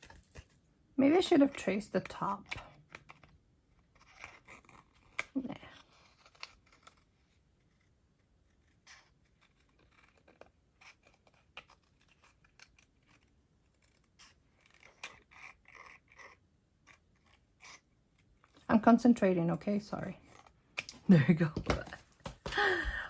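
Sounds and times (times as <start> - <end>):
scissors snipping paper: 1.1 - 18.7.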